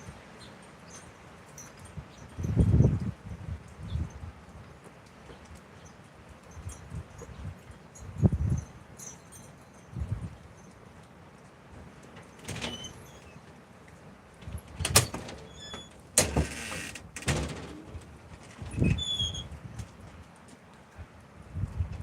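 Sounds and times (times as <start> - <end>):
wind buffeting microphone: 1.8 - 5.7, 6.4 - 8.9, 9.8 - 10.6, 17.3 - 20.2, 21.0 - 22.0.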